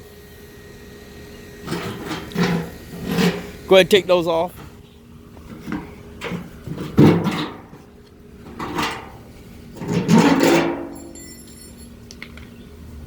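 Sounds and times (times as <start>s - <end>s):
metal parts knocking and scraping: 5.6s - 7.8s, 8.5s - 9.2s, 9.8s - 12.0s
metal ringing: 9.9s - 12.0s.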